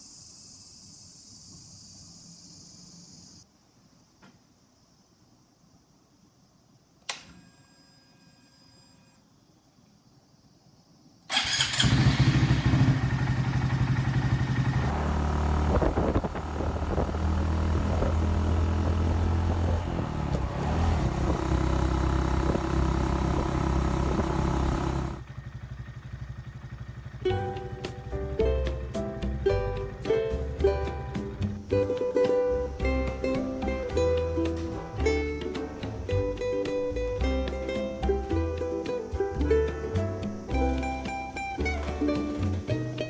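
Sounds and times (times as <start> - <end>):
click: 7.0 - 7.5
motorcycle engine idling: 11.3 - 31.7.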